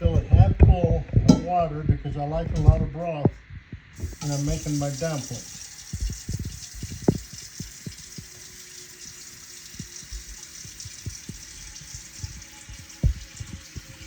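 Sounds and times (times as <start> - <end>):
tap water running into pot: 4.0 - 14.0.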